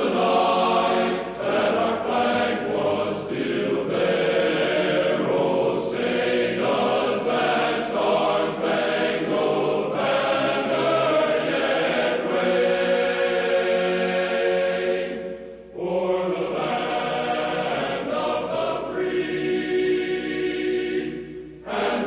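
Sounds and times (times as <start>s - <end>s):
choir singing chant-like notes: 0.0s - 22.0s.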